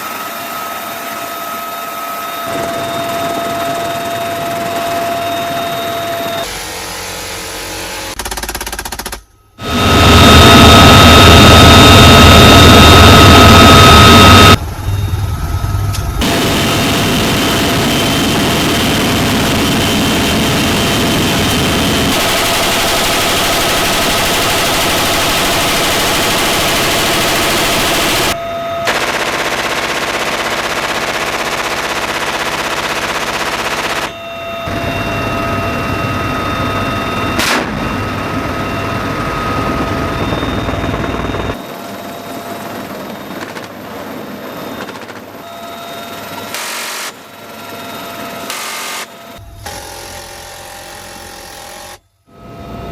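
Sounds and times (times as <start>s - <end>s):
minigun firing bursts: 16.2s - 34.1s.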